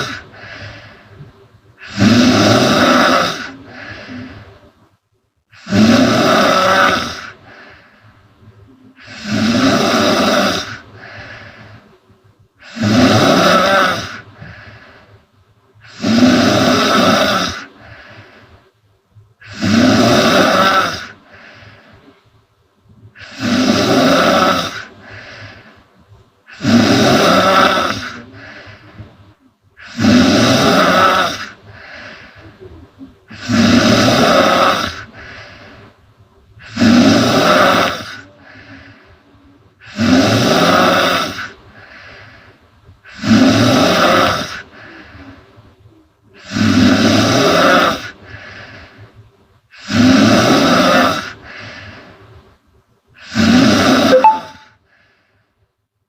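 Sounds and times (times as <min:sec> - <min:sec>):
woman snoring loudly: 0:01.8 - 0:03.8, 0:05.6 - 0:07.4, 0:09.0 - 0:10.8, 0:12.6 - 0:14.2, 0:15.9 - 0:17.7, 0:19.4 - 0:21.2, 0:23.2 - 0:24.9, 0:26.5 - 0:28.2, 0:29.8 - 0:31.5, 0:33.3 - 0:35.1, 0:36.6 - 0:38.2, 0:39.8 - 0:41.5, 0:43.1 - 0:44.6, 0:46.4 - 0:48.1, 0:49.8 - 0:51.4, 0:53.2 - 0:54.6.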